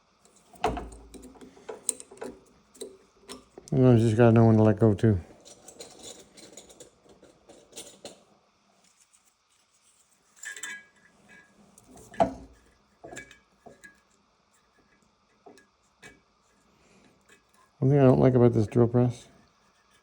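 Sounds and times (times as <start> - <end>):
hands handling metal: 5.4 - 8.2.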